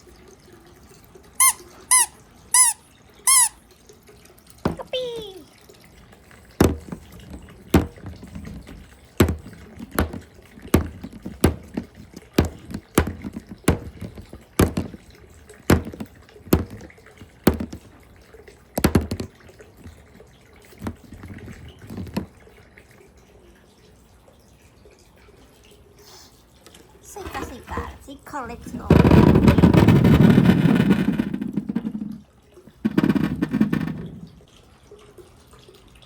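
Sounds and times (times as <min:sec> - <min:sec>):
water dripping and splashing: 0:00.0 - 0:36.0
marble balls clacking on track: 0:06.6 - 0:17.9, 0:18.8 - 0:19.9, 0:28.7 - 0:34.4.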